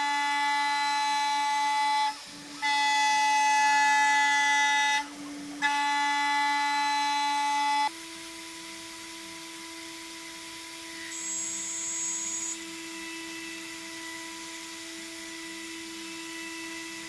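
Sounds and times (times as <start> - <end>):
router cutting metal whine: 0.0 - 17.0
low spindle whine: 10.5 - 17.0.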